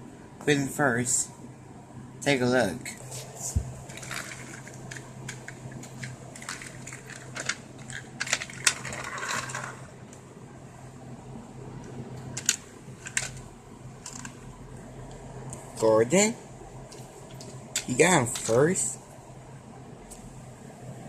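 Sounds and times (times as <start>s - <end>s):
faint steady hum: 0.0s - 21.0s
plastic toy trains clattering: 3.9s - 9.9s, 12.4s - 13.4s, 14.0s - 14.4s, 17.8s - 18.6s.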